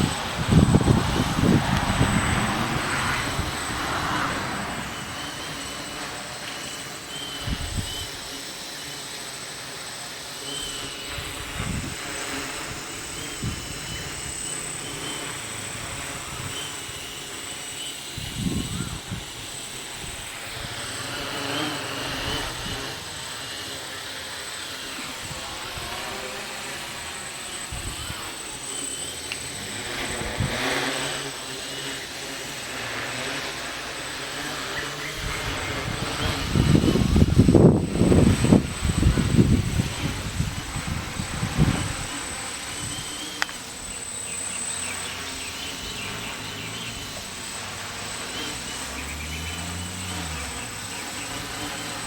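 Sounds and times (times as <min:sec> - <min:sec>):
wind buffeting microphone: 0:00.0 - 0:06.1, 0:07.3 - 0:08.3, 0:11.0 - 0:17.4, 0:18.0 - 0:23.4, 0:25.1 - 0:28.6, 0:29.4 - 0:30.9, 0:35.0 - 0:43.2.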